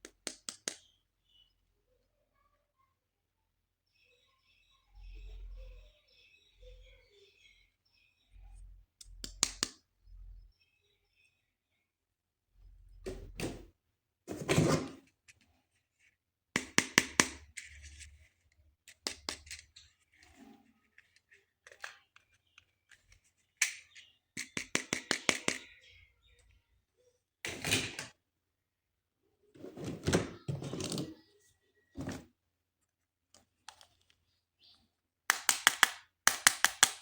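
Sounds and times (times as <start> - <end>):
plastic toys clicking and tapping: 0.0 - 0.9, 9.0 - 9.8, 16.6 - 25.9, 35.3 - 37.0.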